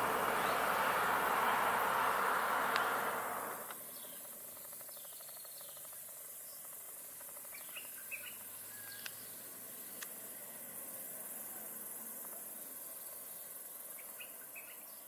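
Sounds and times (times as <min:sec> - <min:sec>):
broad rushing noise: 0:00.0 - 0:03.7
bird chirps: 0:00.0 - 0:06.7, 0:07.4 - 0:09.4
insect hiss: 0:00.0 - 0:15.0.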